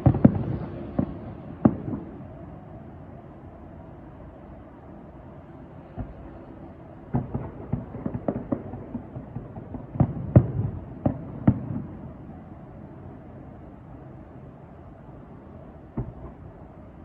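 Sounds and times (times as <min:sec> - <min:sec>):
fireworks bursting: 0:00.0 - 0:02.2, 0:07.1 - 0:12.0.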